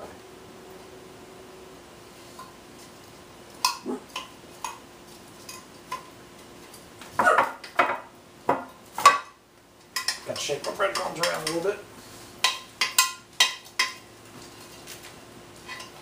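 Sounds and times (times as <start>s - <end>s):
dishes and utensils clattering: 9.9s - 11.7s, 12.4s - 15.0s, 15.6s - 16.0s.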